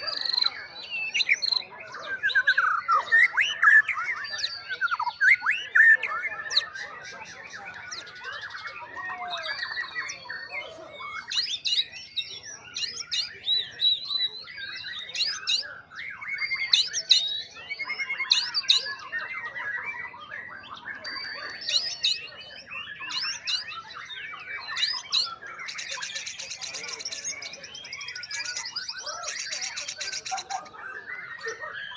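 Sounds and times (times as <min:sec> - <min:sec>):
bird singing whistles and trills: 0:00.0 - 0:31.9.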